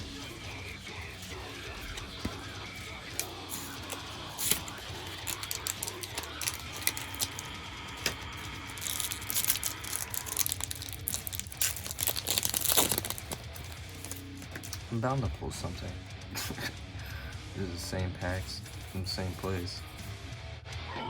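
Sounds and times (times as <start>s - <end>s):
packaging clicks and rustles: 0.0s - 14.9s
wrapper crinkling and tearing: 0.1s - 14.9s.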